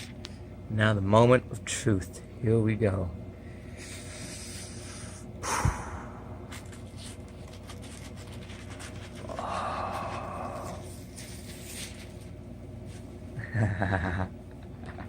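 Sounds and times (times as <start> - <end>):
paper crinkling: 6.5 - 12.4
paper rustling: 6.5 - 12.4
paper sliding hiss: 6.6 - 13.0.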